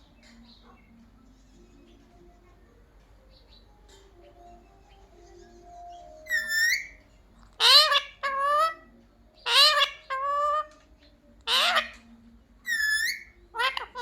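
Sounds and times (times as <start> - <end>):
parakeet shrill calls: 5.4 - 10.8, 11.4 - 14.0.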